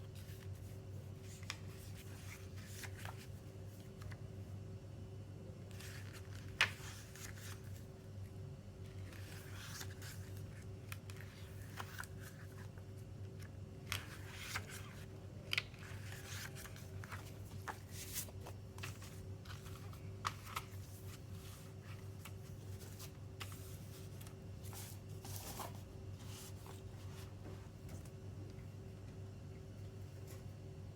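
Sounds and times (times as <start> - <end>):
low electrical hum: 0.0 - 30.9
paper and plastic rustling: 13.4 - 27.5.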